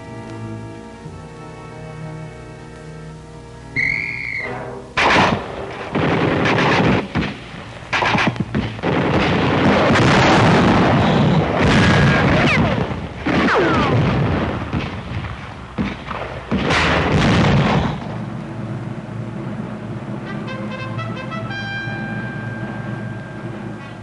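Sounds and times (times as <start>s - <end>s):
falling whistles: 3.7s - 4.8s
explosions: 4.4s - 21.3s
gunfire: 4.5s - 18.3s.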